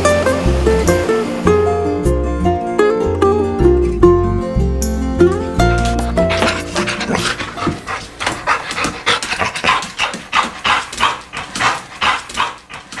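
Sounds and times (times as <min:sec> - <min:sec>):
plucked-string music: 0:00.0 - 0:07.9
dog panting: 0:05.7 - 0:13.0.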